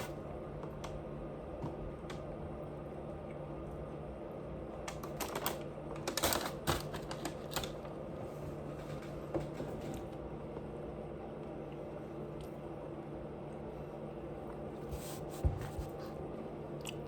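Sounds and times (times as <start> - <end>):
steady low hum: 0.0 - 17.0
crunching of food being chewed: 16.8 - 17.0.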